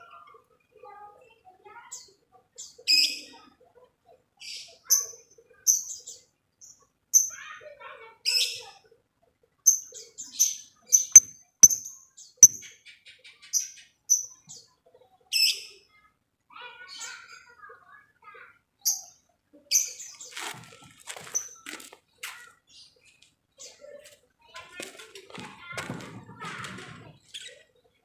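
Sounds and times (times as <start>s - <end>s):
bird chirping high-pitched: 9.7s - 12.7s.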